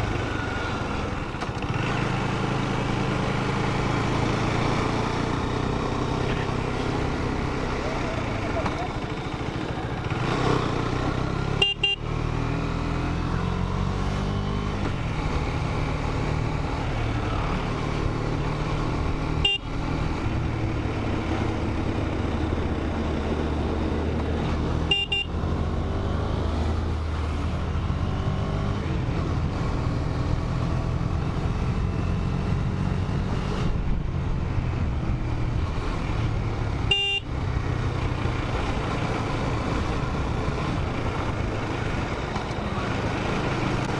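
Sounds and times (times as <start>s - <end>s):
motorcycle engine running: 0.0s - 12.0s, 14.8s - 25.8s
horn toot: 11.5s - 12.1s, 19.4s - 19.7s, 24.8s - 25.4s, 36.9s - 37.3s.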